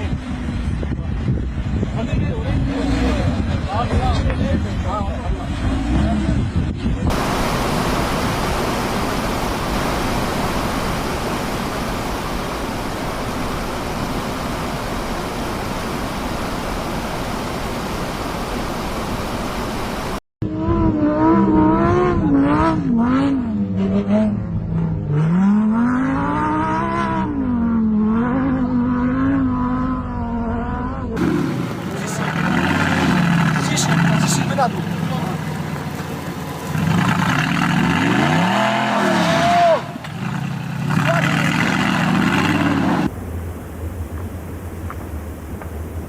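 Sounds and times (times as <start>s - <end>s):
tyre and wind noise: 0.0s - 23.0s, 41.7s - 46.0s
engine revving: 2.4s - 14.5s, 20.4s - 46.0s.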